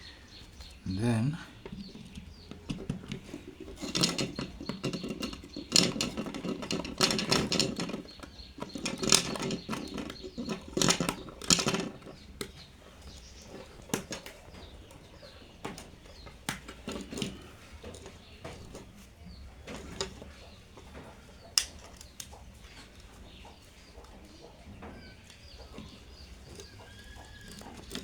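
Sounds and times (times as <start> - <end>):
wires rustling and scraping: 0.3 - 24.4, 25.3 - 28.0.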